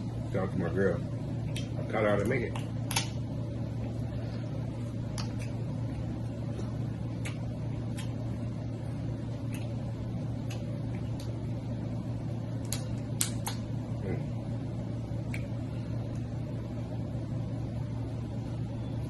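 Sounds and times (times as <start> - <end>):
low room hum: 0.0 - 19.0
crab legs cracking: 1.5 - 3.2, 12.6 - 13.7.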